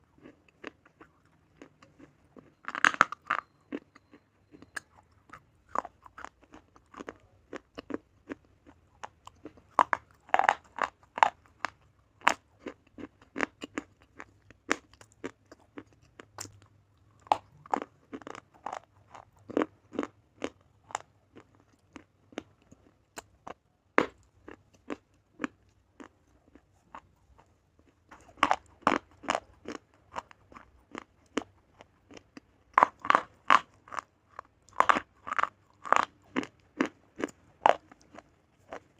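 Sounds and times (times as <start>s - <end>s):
person chewing crunchy bar: 0.0s - 38.9s.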